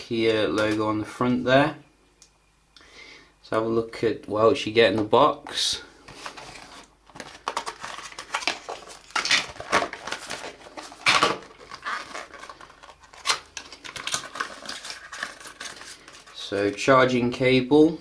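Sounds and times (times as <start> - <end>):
cardboard packaging rustling: 6.0 - 17.1.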